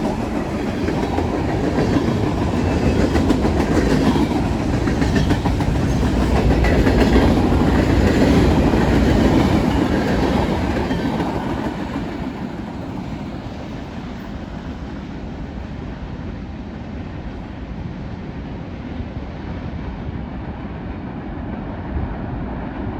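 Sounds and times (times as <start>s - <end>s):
freight train wheels clacking: 0.0s - 15.4s.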